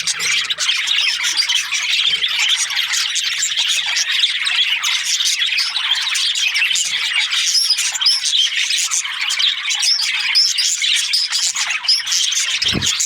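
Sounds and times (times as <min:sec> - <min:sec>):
budgerigars chattering: 0:00.0 - 0:13.0.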